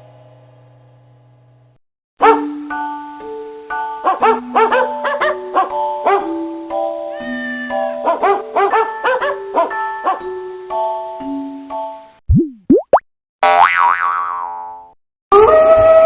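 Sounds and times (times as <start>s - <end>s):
bouncy cartoon melody: 2.2s - 14.1s.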